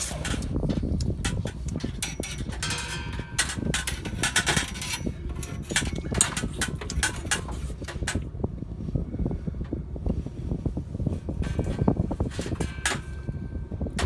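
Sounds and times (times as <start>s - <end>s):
tool clattering in metal duct: 0.0s - 8.2s, 11.4s - 13.4s
steady low rumble: 0.0s - 14.0s.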